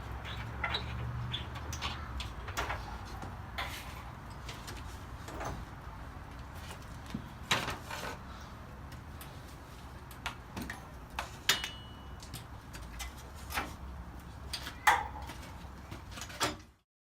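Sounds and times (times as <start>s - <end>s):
clanks and knocks of metal tools: 0.3s - 5.7s, 10.1s - 13.8s, 14.5s - 16.7s.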